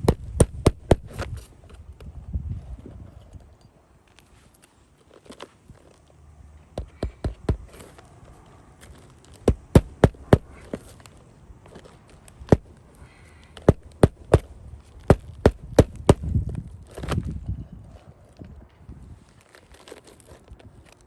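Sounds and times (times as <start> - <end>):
hammer driving nails into shingle: 0.0 - 1.4, 6.8 - 8.0, 9.4 - 10.9, 12.4 - 12.7, 13.6 - 17.2.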